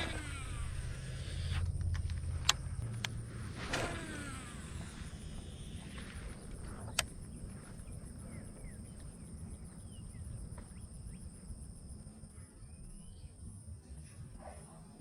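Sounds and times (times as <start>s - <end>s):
low wind rumble: 0.0s - 13.8s
insects trilling: 0.0s - 15.0s
faint bird chirps: 5.2s - 14.2s.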